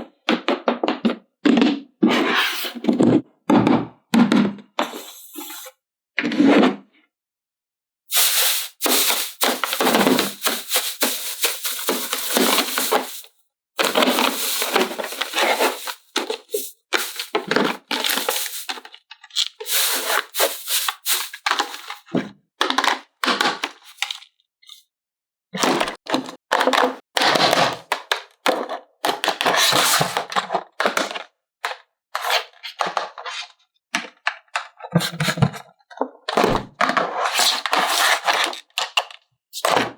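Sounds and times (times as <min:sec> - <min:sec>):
plastic packaging crinkling: 0:08.1 - 0:19.0, 0:19.6 - 0:22.0.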